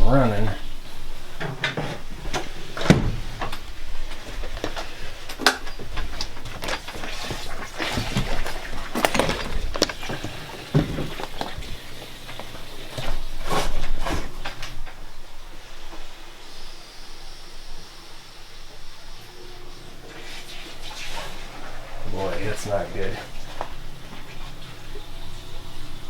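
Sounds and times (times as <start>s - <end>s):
water splashing: 0.0s - 15.4s.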